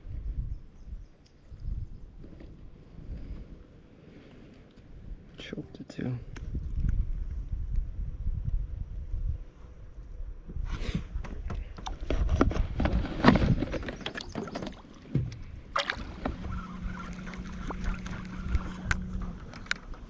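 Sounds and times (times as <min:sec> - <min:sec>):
steady low hum: 0:15.3 - 0:20.0.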